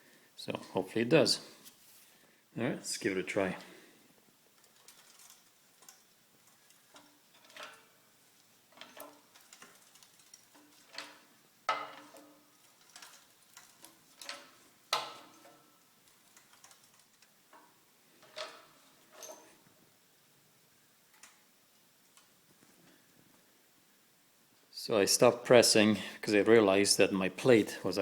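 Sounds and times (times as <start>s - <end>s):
sharp metal cracks: 4.6s - 19.4s
shop press clicks and metallic creaks: 6.9s - 8.0s, 8.7s - 15.8s, 18.2s - 19.6s.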